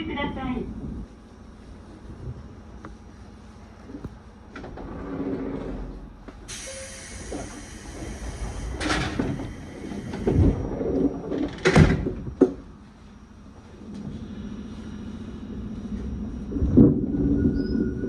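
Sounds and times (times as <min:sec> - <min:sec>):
train doors thumping shut: 0:08.0 - 0:12.8.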